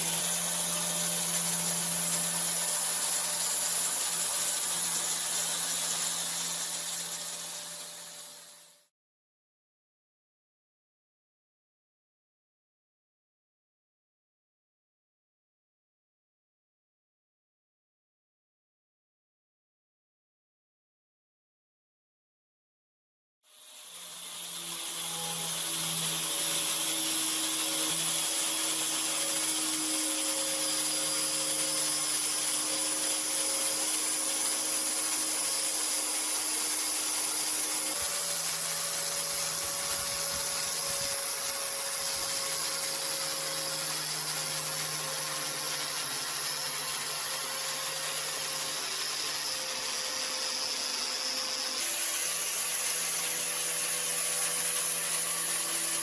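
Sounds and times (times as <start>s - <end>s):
power tool motor hum: 0.0s - 8.9s, 23.5s - 56.0s.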